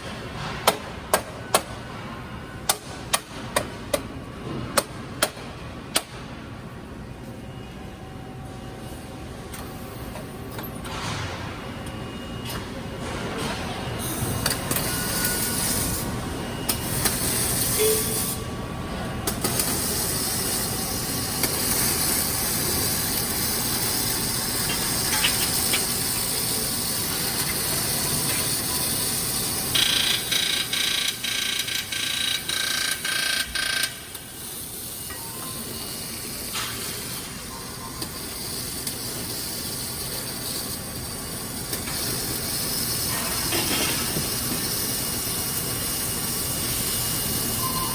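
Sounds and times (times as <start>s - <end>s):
welding hiss: 19.4s - 32.7s, 38.1s - 47.9s.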